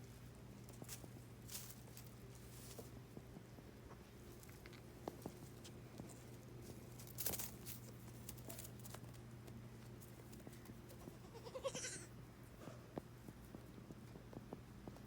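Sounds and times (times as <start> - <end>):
goat bleating: 11.0 - 12.1
goat sneezing: 11.3 - 12.1.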